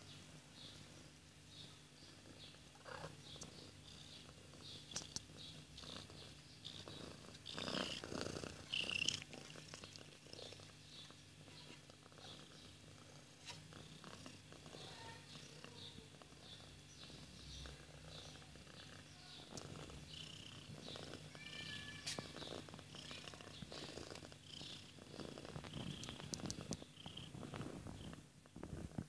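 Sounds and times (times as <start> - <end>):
cat purring: 0.6 - 21.5, 22.2 - 29.0.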